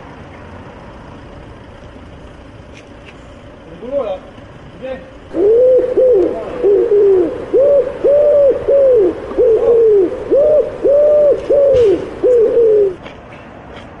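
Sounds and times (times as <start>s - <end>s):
bird hooting: 5.3s - 13.0s.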